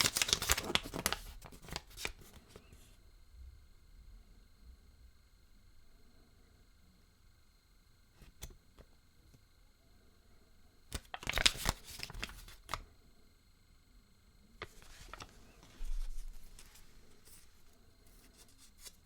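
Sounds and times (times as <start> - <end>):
wrapper crinkling: 0.0 - 2.3, 11.0 - 12.8.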